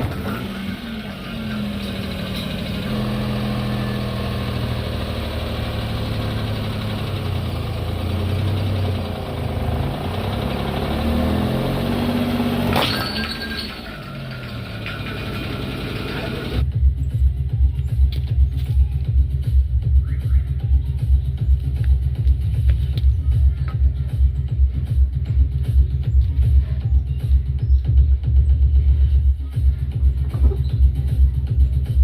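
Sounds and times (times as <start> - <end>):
car engine running: 0.0 - 32.0
sharp crack: 12.4 - 15.3.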